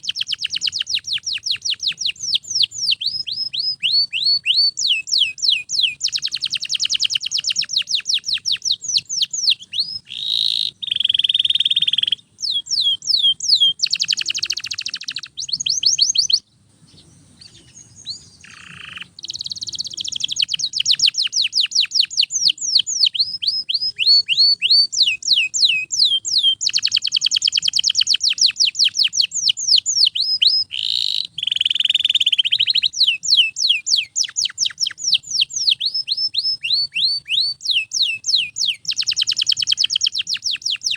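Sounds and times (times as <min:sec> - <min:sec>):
canary singing: 0:00.0 - 0:40.9.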